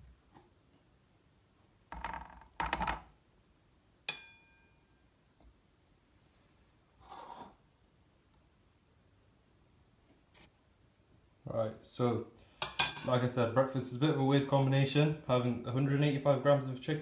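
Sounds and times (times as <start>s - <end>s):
scraping rustles of dishes: 7.0s - 7.6s
dish clinking: 12.6s - 13.2s.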